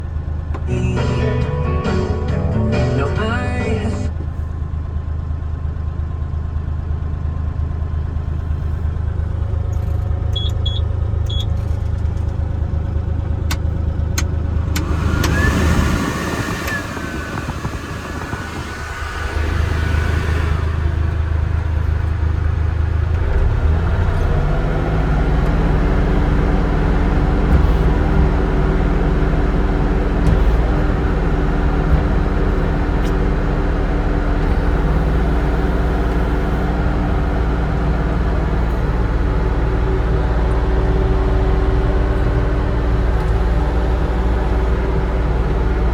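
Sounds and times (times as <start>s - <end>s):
diesel engine running: 0.0s - 45.9s
high steady whine: 14.7s - 22.4s
rushing hiss: 14.8s - 21.1s.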